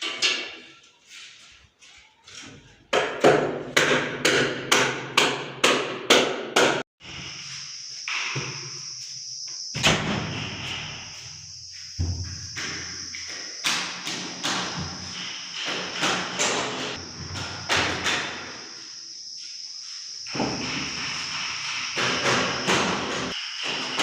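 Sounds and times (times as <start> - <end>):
high-pitched hiss: 7.0 - 24.0.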